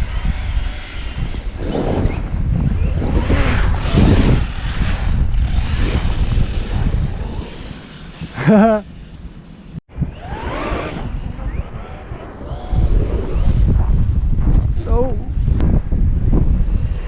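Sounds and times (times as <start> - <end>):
high whine of electric motors: 0.0 - 2.2, 2.8 - 15.6
wind buffeting microphone: 0.0 - 17.0.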